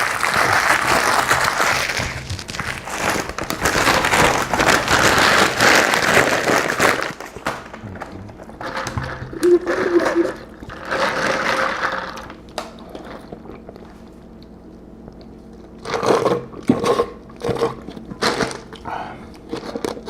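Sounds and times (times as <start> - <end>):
food handling: 0.0 - 9.3
chewing: 10.6 - 20.0.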